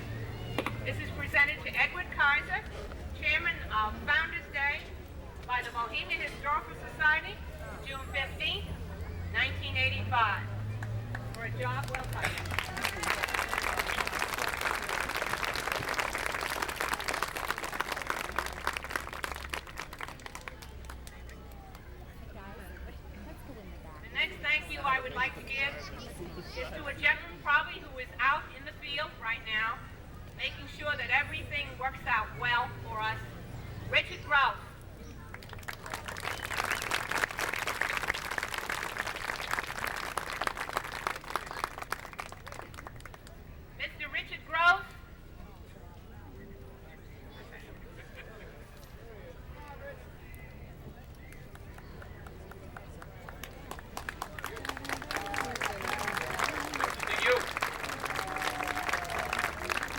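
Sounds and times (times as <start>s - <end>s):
crowd applauding: 10.7s - 22.0s, 35.3s - 43.4s, 51.2s - 59.9s.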